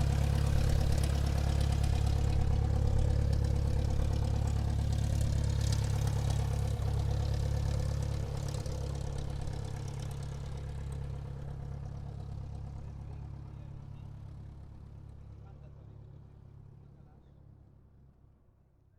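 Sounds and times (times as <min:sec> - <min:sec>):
airplane engines low rumble: 0:00.0 - 0:14.9.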